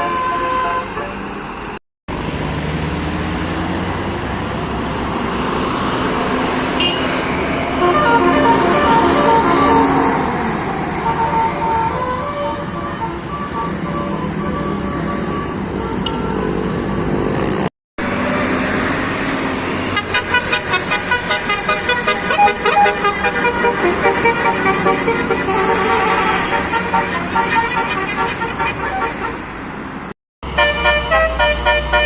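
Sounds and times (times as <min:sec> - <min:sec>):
multi-tone bus air horn melody: 0:00.0 - 0:01.3, 0:06.7 - 0:16.8, 0:19.8 - 0:29.5, 0:30.4 - 0:32.0
bus engine running: 0:00.5 - 0:32.0.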